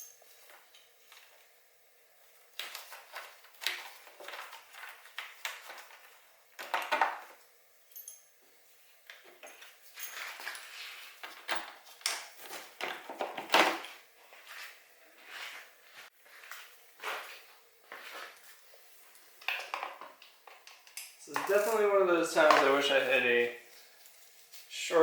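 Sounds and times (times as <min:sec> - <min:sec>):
hand tools and metal fasteners clinking: 0:06.6 - 0:08.4, 0:09.1 - 0:13.9.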